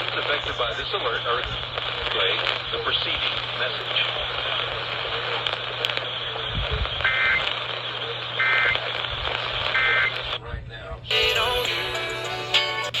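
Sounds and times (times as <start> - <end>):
radio hiss and hum: 0.0 - 12.5
buzzy digital data bursts: 6.2 - 7.5, 8.4 - 8.9.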